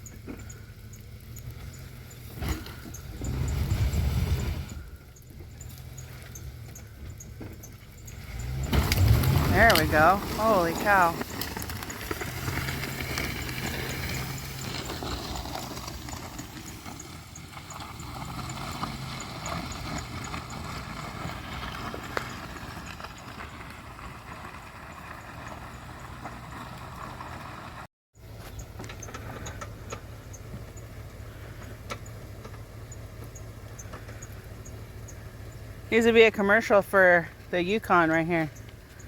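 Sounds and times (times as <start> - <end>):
light ticking and rustling: 0.0 - 3.6, 5.0 - 9.1, 28.4 - 36.2, 38.3 - 39.0
car engine running: 0.0 - 39.0.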